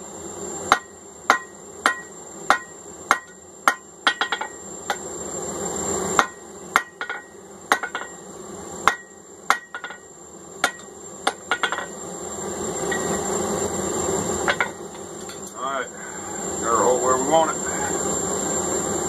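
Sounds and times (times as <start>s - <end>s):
hammer striking steel on anvil: 0.7s - 5.0s, 6.2s - 8.2s, 8.8s - 11.9s, 14.5s - 15.6s.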